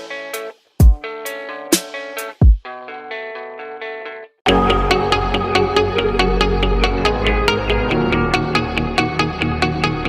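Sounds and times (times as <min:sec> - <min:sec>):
effected guitar chords: 0:00.0 - 0:10.0.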